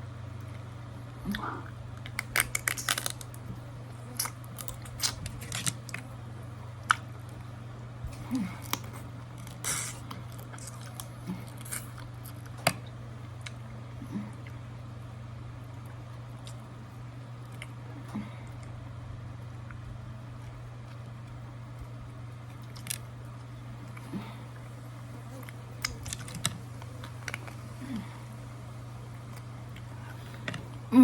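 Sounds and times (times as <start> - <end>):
steady low hum: 0.0 - 31.0
crab shells cracking: 1.4 - 6.2, 8.6 - 13.6, 22.4 - 24.0, 25.3 - 27.9.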